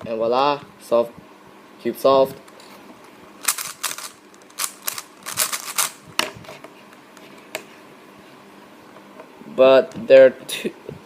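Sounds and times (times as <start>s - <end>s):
puzzle cube layers clacking: 3.4s - 6.0s.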